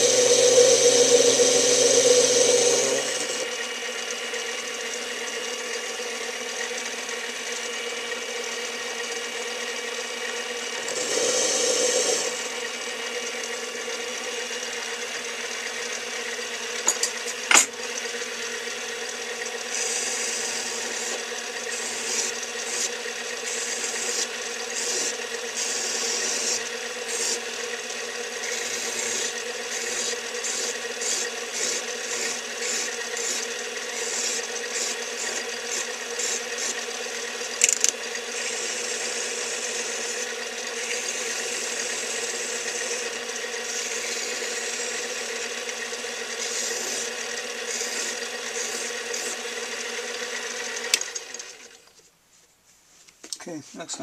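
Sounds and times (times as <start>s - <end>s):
metal cutting scraping: 0.0s - 3.7s, 10.7s - 13.6s, 19.5s - 51.8s
lathe motor whine: 0.0s - 51.9s.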